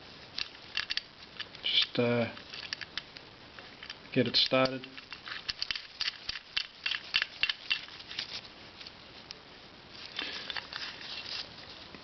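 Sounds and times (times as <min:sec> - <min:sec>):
small metal parts clicking: 0:00.4 - 0:03.1, 0:03.8 - 0:08.0
short rustle: 0:09.9 - 0:12.0.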